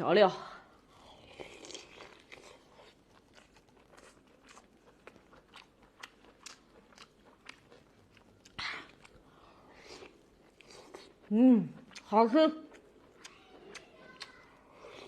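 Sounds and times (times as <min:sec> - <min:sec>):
mouth clicks and crunches: 0:01.4 - 0:09.2, 0:09.8 - 0:15.0.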